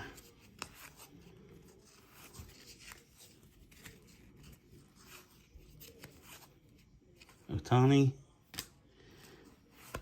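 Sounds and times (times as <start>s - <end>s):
trading cards flipped by hand: 0.2s - 7.4s, 9.6s - 10.0s.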